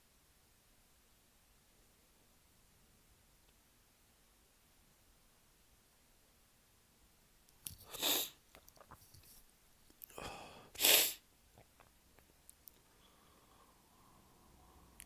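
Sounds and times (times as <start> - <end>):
man sneezing stifled: 10.2 - 11.2
small breaths and clicks: 11.6 - 14.3.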